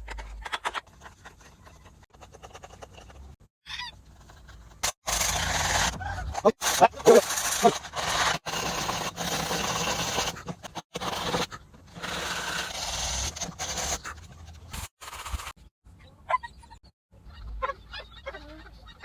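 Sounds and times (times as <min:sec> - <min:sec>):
small power tool on wood: 0:06.6 - 0:14.0.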